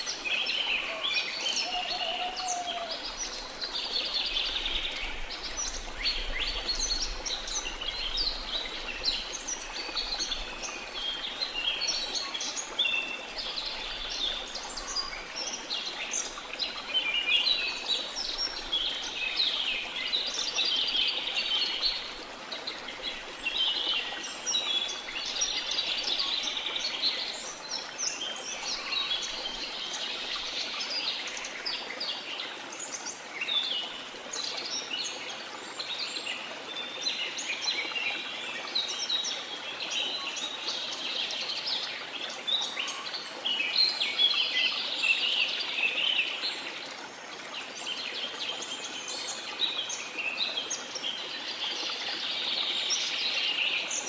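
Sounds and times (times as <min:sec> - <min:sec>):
birds chirping and trilling: 0:00.0 - 0:12.7
falling water rushing: 0:00.0 - 0:31.7.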